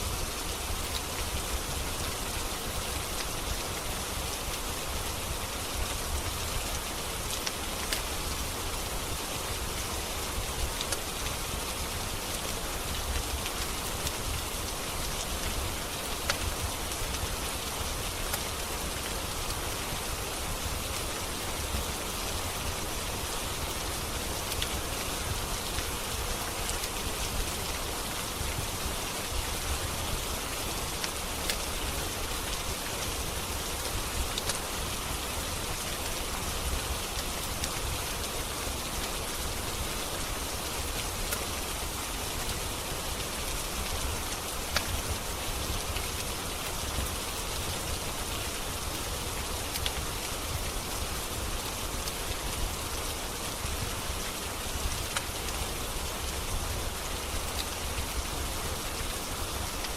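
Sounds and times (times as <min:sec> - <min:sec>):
steady rain falling: 0:00.0 - 0:59.9
wood fire crackling: 0:10.7 - 0:19.4, 0:48.3 - 0:59.9.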